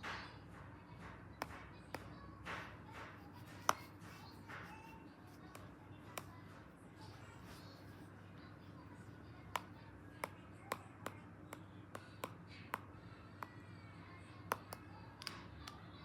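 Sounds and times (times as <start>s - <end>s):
fingernail tapping hard surface: 0.0s - 6.6s, 9.5s - 13.6s, 14.4s - 15.8s
faint steady hum: 0.0s - 16.0s.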